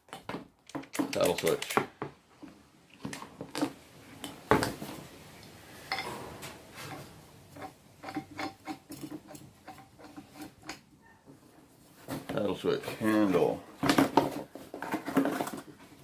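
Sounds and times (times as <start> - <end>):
tool parts clicking: 0.2 - 1.9
plastic and metal rattling: 13.7 - 16.0.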